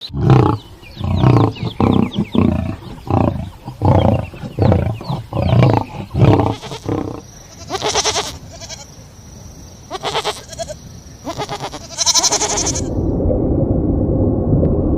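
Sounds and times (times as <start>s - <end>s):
lion roaring: 0.0s - 7.3s.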